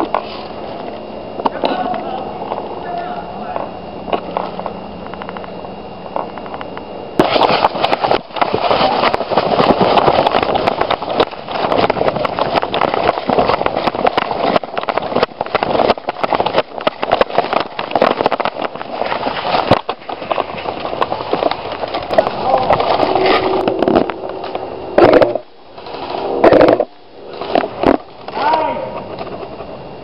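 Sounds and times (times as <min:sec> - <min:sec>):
rustling through dry leaves: 0:07.2 - 0:29.2.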